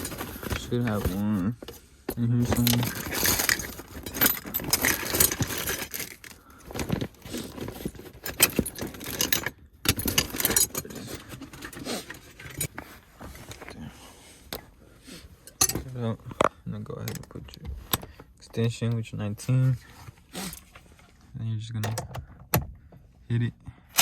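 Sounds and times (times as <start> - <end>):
metal tools clinking and rattling: 0.0 - 13.8, 15.4 - 18.1.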